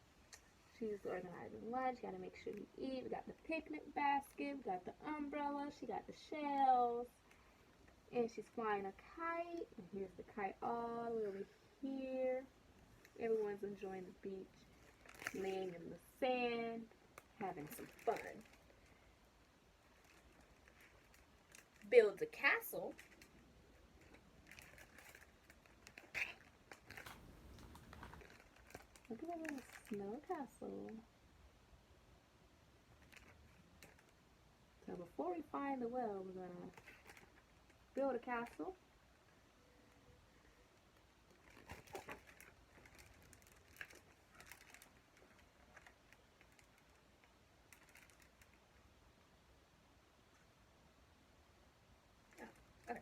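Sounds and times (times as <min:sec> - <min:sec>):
faint clicks and crackles: 0:00.0 - 0:31.4, 0:32.6 - 0:50.9, 0:52.0 - 0:53.0
paper rustling: 0:19.9 - 0:30.5, 0:41.3 - 0:47.1
soft clicks of book: 0:22.9 - 0:31.0, 0:33.0 - 0:34.2, 0:39.2 - 0:48.9.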